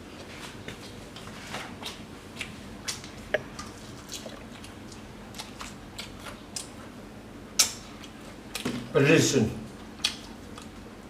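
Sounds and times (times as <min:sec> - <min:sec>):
person chewing food: 0:00.7 - 0:06.8.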